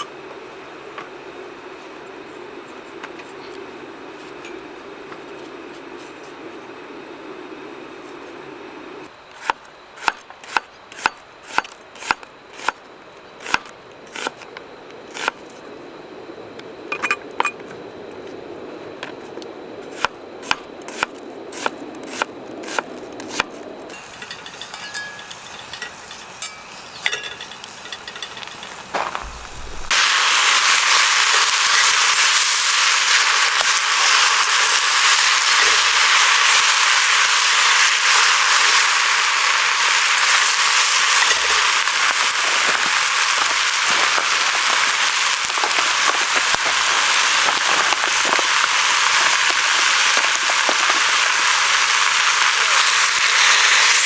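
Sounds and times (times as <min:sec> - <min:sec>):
loud steady hiss: 0:00.0 - 0:54.0
wood fire crackling and popping: 0:09.4 - 0:15.5, 0:16.6 - 0:54.0
low rushing of flames: 0:11.8 - 0:54.0.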